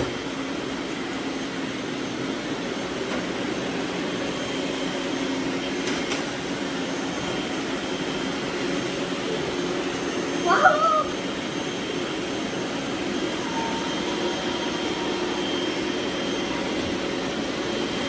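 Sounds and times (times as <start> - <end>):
robot vacuums whirring: 3.0 - 18.0.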